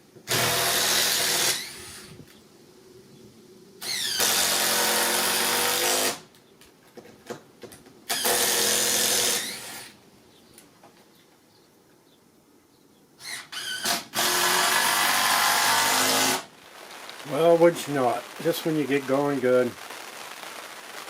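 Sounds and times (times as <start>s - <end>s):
power drill running: 0.3s - 2.1s, 8.1s - 9.9s, 13.2s - 16.5s.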